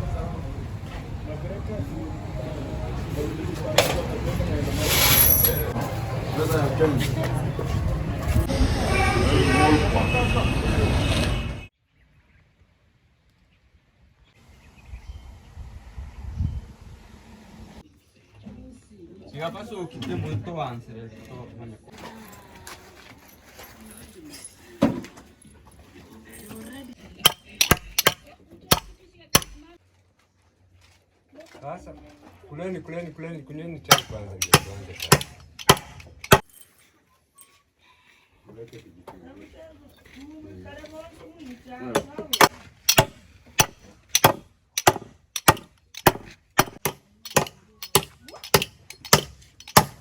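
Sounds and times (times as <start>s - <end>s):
hard clinks and knocks: 26.4s - 29.8s, 33.9s - 36.8s, 42.0s - 50.0s
tool striking wood: 27.2s - 29.7s, 33.9s - 36.5s, 42.0s - 50.0s.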